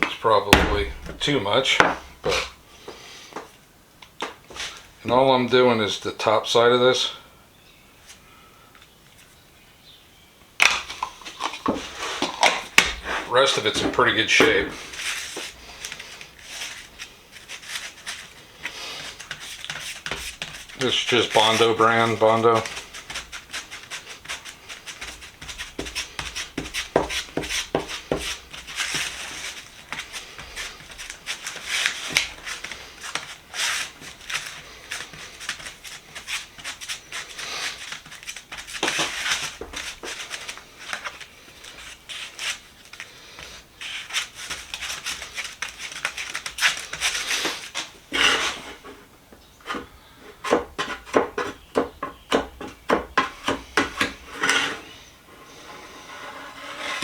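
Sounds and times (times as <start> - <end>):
spreader scraping body filler: 11.8 - 38.3, 43.8 - 49.1, 53.3 - 57.0.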